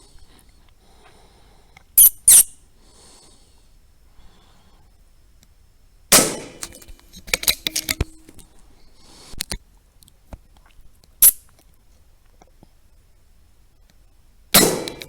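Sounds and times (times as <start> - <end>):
rifle shot: 6.1 - 7.1, 14.6 - 15.0
sharp crack: 6.1 - 8.5, 14.6 - 15.0
clicks and knocks: 6.2 - 8.5.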